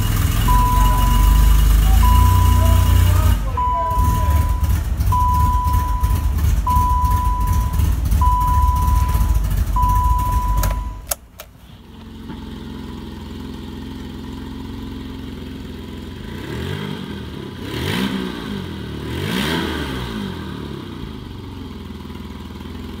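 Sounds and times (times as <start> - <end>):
engine throttle blips: 0.0 - 13.0
car engine idling: 0.0 - 16.5, 20.8 - 23.0
car engine rumbling: 0.0 - 23.0
repeating beep: 0.4 - 11.1.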